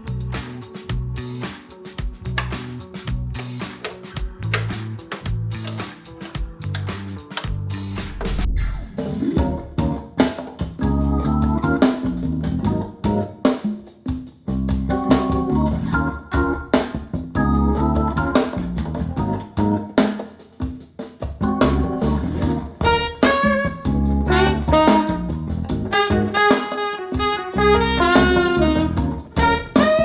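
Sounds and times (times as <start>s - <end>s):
keyboard chords and melody: 0.0s - 13.6s, 14.8s - 20.2s, 21.4s - 30.0s
percussive hits: 2.0s - 10.8s
music through loudspeakers: 26.0s - 30.0s.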